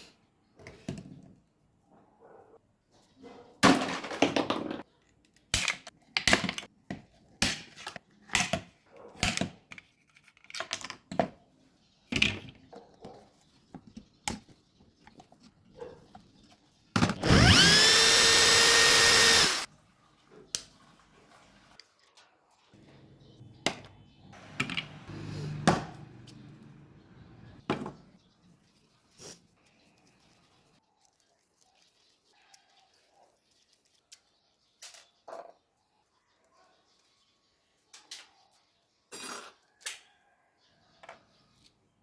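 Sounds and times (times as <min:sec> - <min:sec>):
power drill motor whining: 0:17.1 - 0:19.7.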